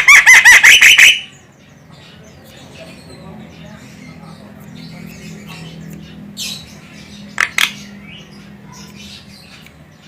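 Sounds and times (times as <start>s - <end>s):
bird harsh squawks: 0.0s - 1.5s
faint bird chatter: 0.0s - 10.0s.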